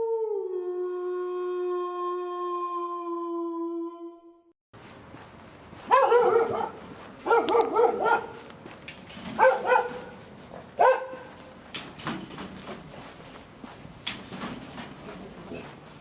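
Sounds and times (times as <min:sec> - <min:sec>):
dog barking: 0:05.9 - 0:08.5, 0:09.3 - 0:11.5.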